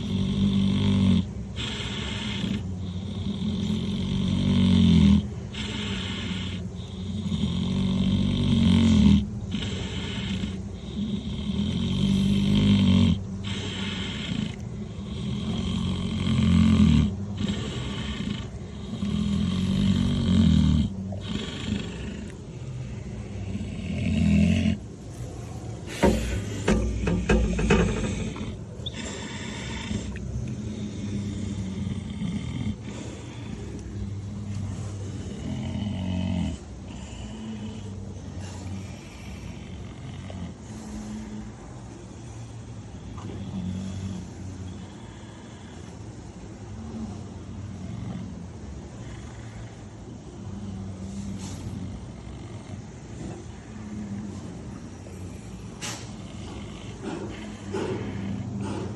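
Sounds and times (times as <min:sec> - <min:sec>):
pig snoring: 0:00.0 - 0:58.9
sharp clicks and knocks: 0:26.0 - 0:28.6.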